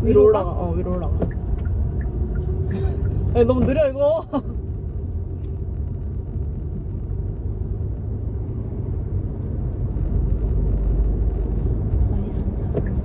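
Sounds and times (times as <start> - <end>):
car cabin engine and road rumble: 0.0 - 13.0.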